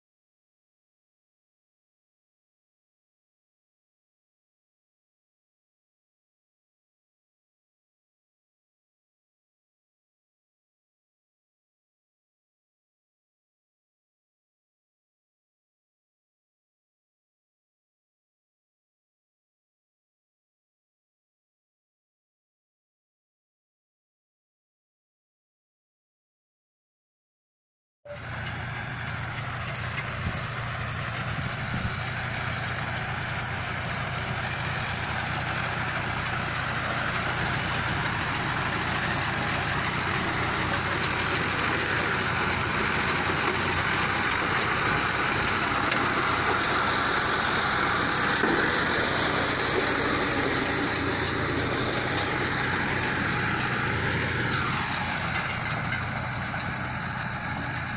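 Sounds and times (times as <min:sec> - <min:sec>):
baler engine running: 0:28.1 - 0:57.9
machinery clatter: 0:28.1 - 0:57.9.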